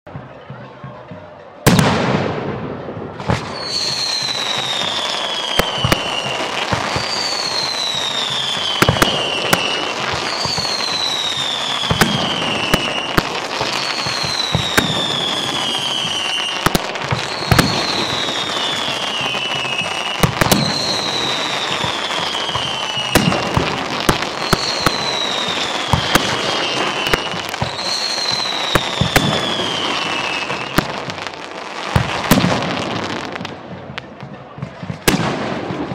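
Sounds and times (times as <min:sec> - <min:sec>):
fireworks crackling and banging: 0:00.1 - 0:35.9
whistle falling in pitch: 0:24.3 - 0:31.0.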